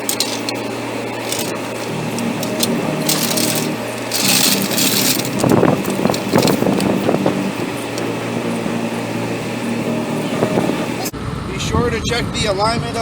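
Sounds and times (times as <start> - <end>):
hydraulic jack clicks and clanks: 0.0 - 8.1
steady background hum: 0.0 - 11.4.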